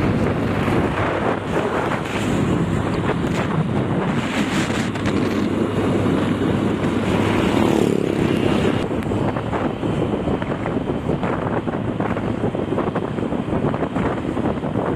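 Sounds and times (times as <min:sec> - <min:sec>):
truck engine and road rumble: 0:00.0 - 0:14.9
wind buffeting microphone: 0:00.0 - 0:14.9.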